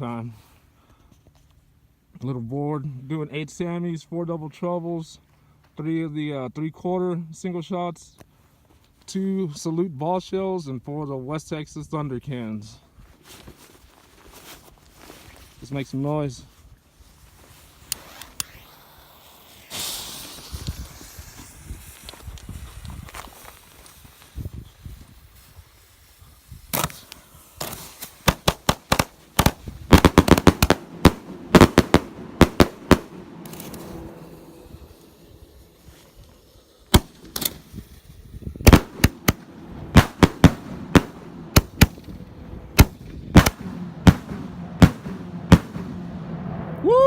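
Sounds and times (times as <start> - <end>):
fuse hissing and sputtering: 17.8 - 43.6
firework bangs: 18.1 - 22.6, 26.7 - 35.9, 36.9 - 46.8
low thuds: 28.3 - 34.6, 38.6 - 46.8.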